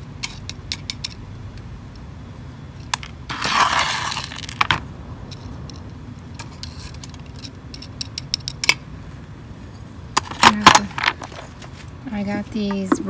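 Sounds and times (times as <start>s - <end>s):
scraping rustle: 3.3s - 4.8s.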